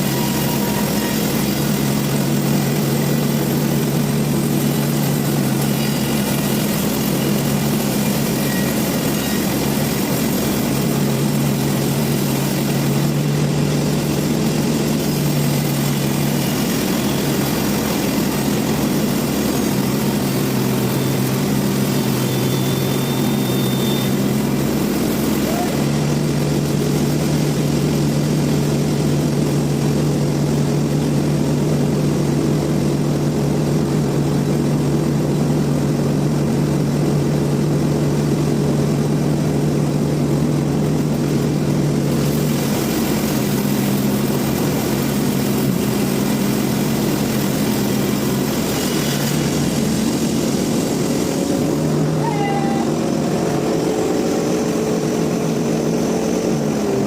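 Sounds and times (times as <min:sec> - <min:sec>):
sawmill machinery humming: 0:00.0 - 0:57.0
hiss: 0:41.9 - 0:52.0.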